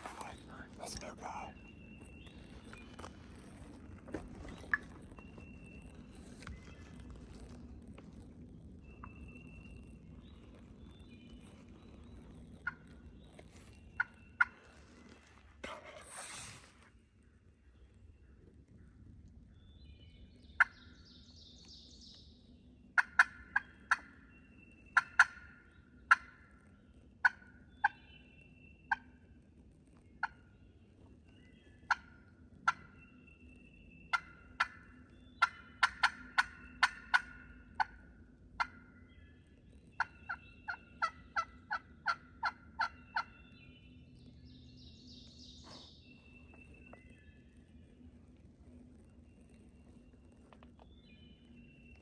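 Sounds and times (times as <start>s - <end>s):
turkey yelps and clucks: 23.0s - 24.2s, 25.0s - 26.4s, 27.2s - 28.0s, 31.9s - 33.0s, 34.1s - 39.0s, 40.0s - 43.4s.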